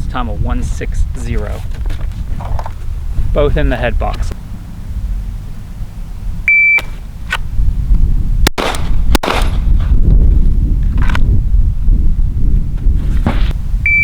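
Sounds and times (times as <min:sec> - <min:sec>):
steady low rumble: 0:00.0 - 0:14.0
shot timer beep: 0:06.5 - 0:06.9
pistol shots: 0:08.5 - 0:09.7.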